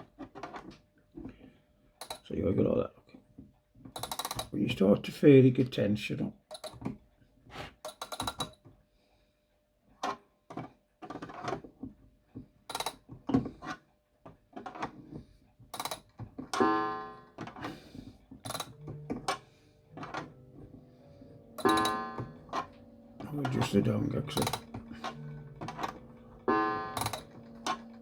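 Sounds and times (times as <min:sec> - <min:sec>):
clock gong ringing: 0:16.6 - 0:17.4, 0:18.6 - 0:28.0
clock winding ratchet clicking: 0:18.5 - 0:18.8, 0:27.0 - 0:27.8.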